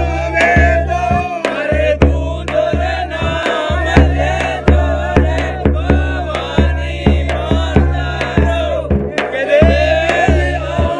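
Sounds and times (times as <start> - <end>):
deep drum beat: 0.0 - 10.9.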